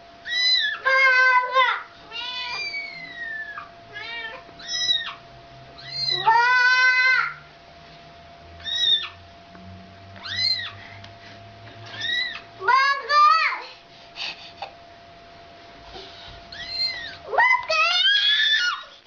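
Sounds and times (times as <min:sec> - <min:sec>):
kitten mewing: 0:02.1 - 0:05.2, 0:05.8 - 0:07.3, 0:08.6 - 0:09.2, 0:10.2 - 0:10.8, 0:11.9 - 0:12.4, 0:16.5 - 0:18.8.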